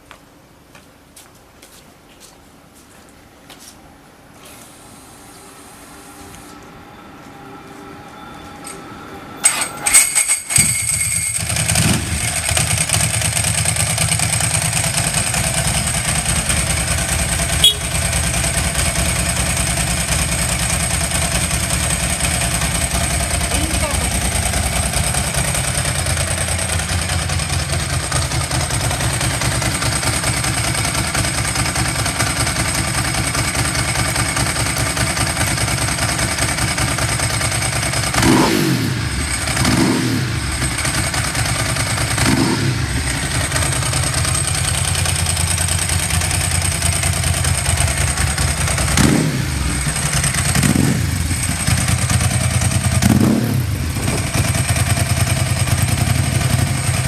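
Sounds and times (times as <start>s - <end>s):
motorcycle engine idling and revving: 9.4s - 57.0s.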